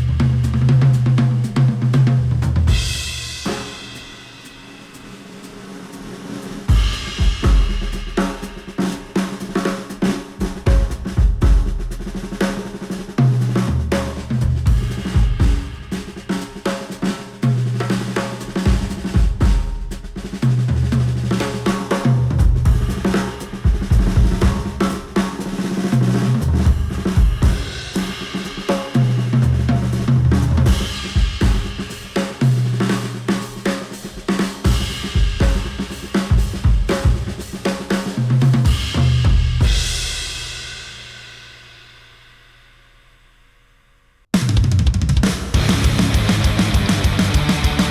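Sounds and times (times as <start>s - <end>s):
drum kit playing: 0.0s - 41.6s, 44.3s - 47.9s
repeating bass line: 45.6s - 47.9s.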